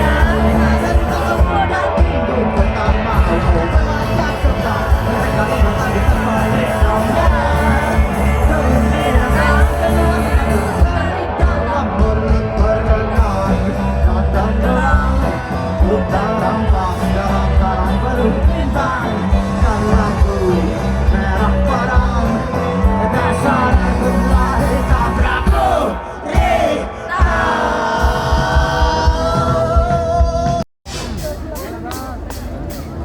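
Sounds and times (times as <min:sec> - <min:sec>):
live rock band playing: 0:00.0 - 0:33.0.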